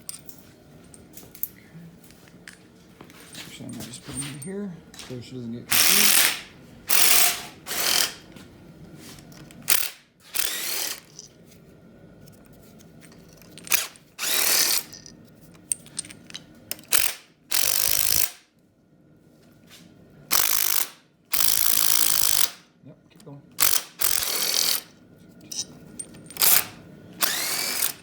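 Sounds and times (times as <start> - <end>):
power tool spinning out bolts: 5.7 - 8.2, 9.5 - 11.3, 13.1 - 18.4, 20.3 - 22.6, 23.6 - 24.9, 25.5 - 28.0.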